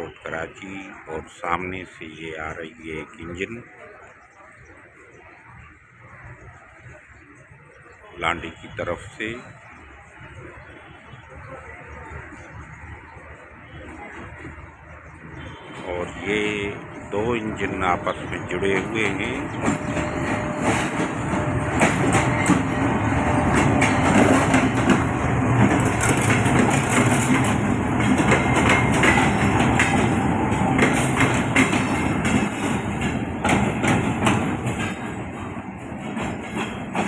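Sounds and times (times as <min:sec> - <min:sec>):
locomotive engines running: 0:00.0 - 0:37.0
wheels clacking over rail joints: 0:16.1 - 0:37.0.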